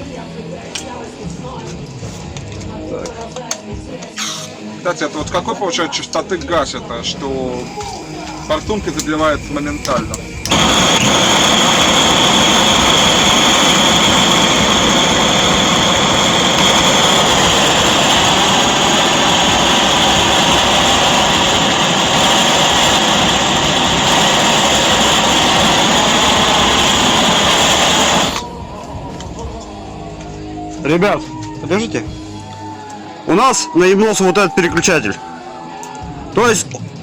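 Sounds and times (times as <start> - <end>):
gas burner hissing: 8.0 - 29.0.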